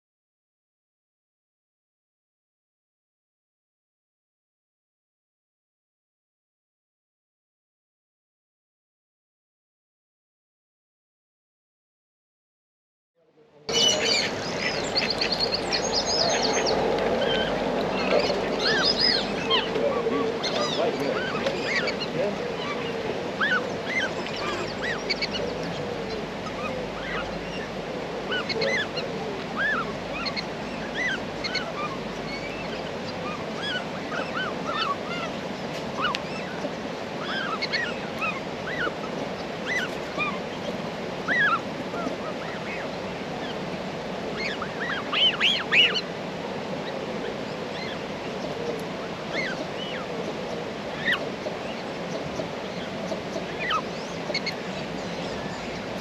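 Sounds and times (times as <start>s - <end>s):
steady background hiss: 13.4s - 56.0s
cygnets peeping: 13.7s - 56.0s.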